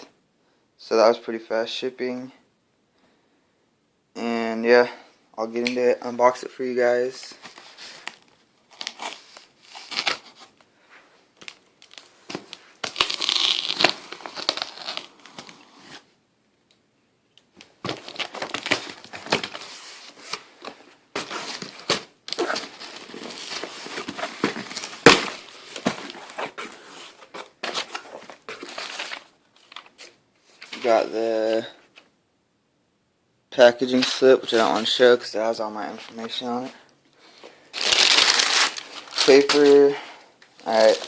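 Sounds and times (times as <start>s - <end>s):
package wrapping crinkling: 7.4s - 10.6s, 11.4s - 16.0s, 17.6s - 30.8s, 37.7s - 40.0s, 40.6s - 41.0s.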